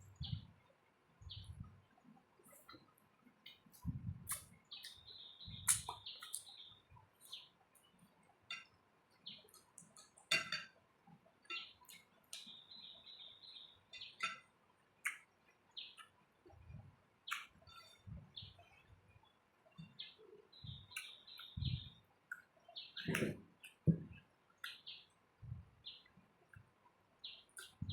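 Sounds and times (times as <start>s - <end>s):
dull low thumps: 0.0s - 0.5s, 3.8s - 4.3s, 21.6s - 21.9s.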